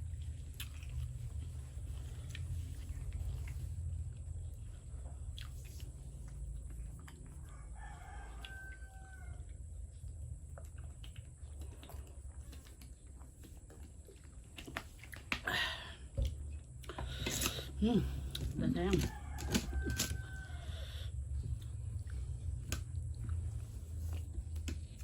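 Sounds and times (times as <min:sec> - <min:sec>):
steady low hum: 0:00.0 - 0:25.0
rooster crowing: 0:07.4 - 0:09.6, 0:18.8 - 0:21.1.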